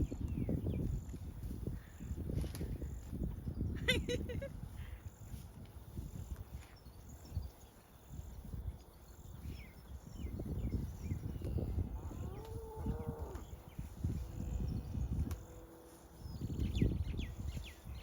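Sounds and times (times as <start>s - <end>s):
small birds chirping: 0.0s - 18.0s
cow mooing: 12.0s - 13.5s.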